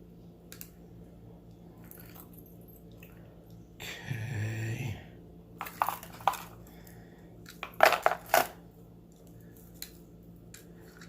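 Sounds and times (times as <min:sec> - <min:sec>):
jewelry clinking and rattling: 0:07.6 - 0:08.6.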